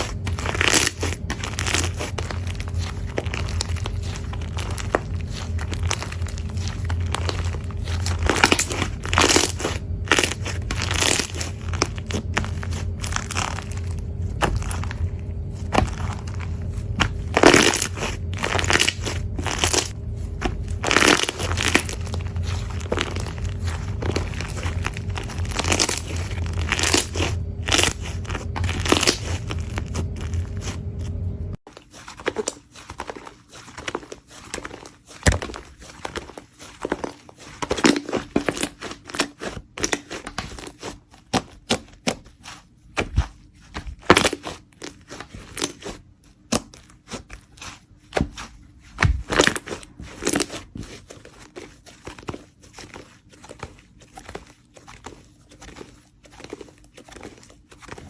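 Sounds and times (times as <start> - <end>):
slime crackling and popping: 0.0 - 31.3
steady low hum: 0.0 - 31.6.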